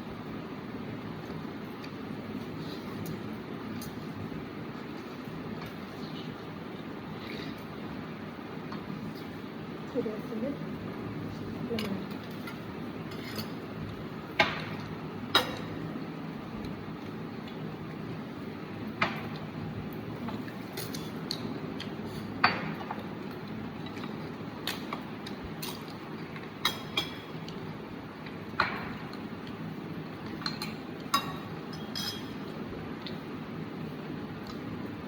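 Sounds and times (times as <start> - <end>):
steady low hum: 0.0 - 35.0
kitchen utensils clinking: 30.4 - 32.4.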